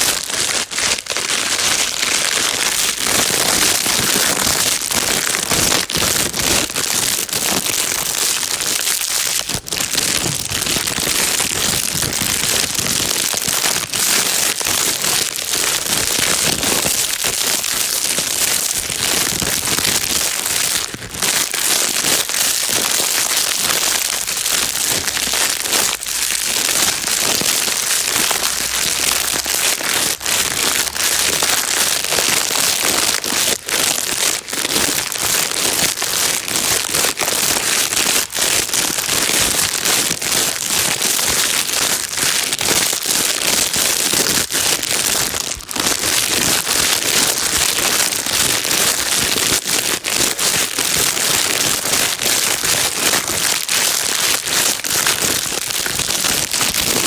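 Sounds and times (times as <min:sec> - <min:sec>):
plastic bag crinkling: 0:00.0 - 0:57.0.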